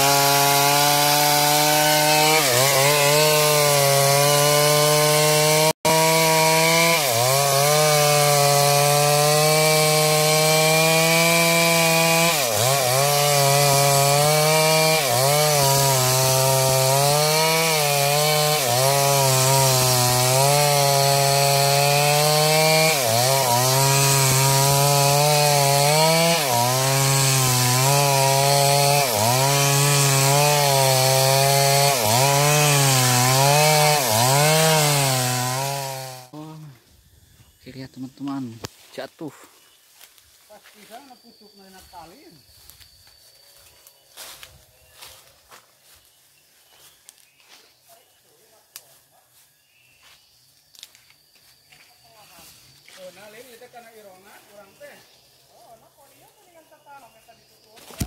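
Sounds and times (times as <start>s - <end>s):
chainsaw cutting wood: 0.0s - 36.6s.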